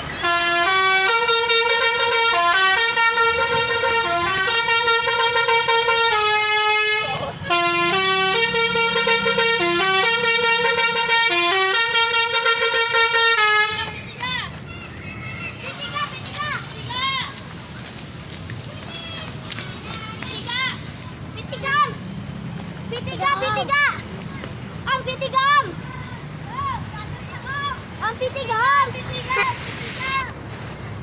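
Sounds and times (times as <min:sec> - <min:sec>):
musical air horn playing a tune: 0:00.0 - 0:14.0.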